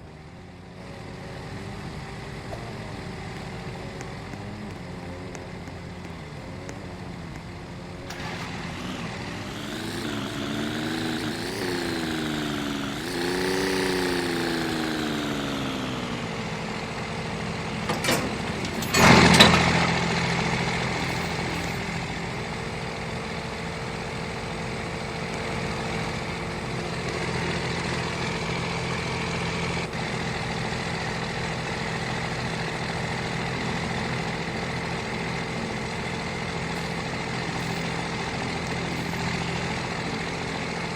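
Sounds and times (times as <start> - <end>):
vehicle engine revving: 0.0 - 40.9
loud sudden clatter: 17.8 - 22.3.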